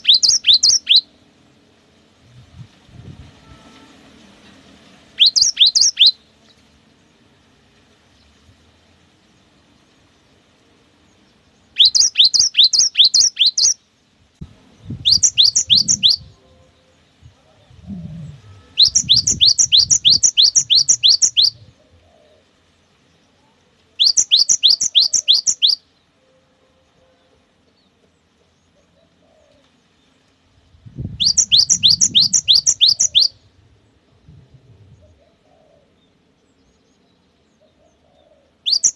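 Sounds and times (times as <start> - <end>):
bird singing whistled notes: 0.0 - 1.1, 5.2 - 6.3, 11.6 - 13.9, 14.8 - 22.4, 24.0 - 27.9, 30.8 - 34.0, 34.9 - 38.9.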